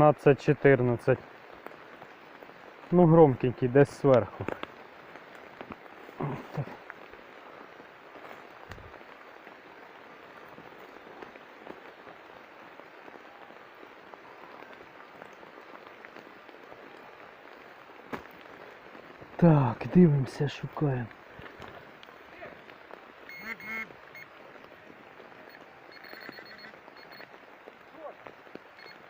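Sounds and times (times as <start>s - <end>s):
soil and leaves rustling: 0.0s - 29.0s.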